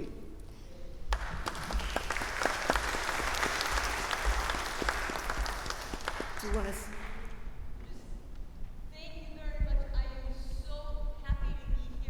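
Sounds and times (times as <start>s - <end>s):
congregation applauding: 1.1s - 7.6s.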